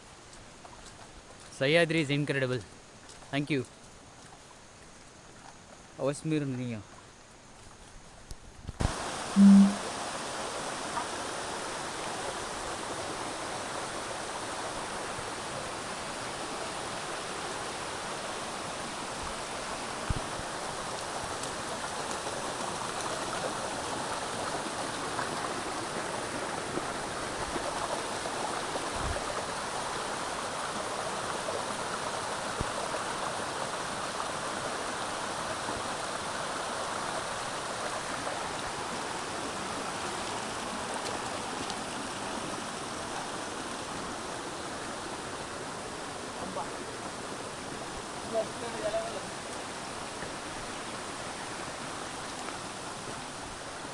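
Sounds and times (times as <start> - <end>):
stream and waterfall rushing: 8.8 - 53.9.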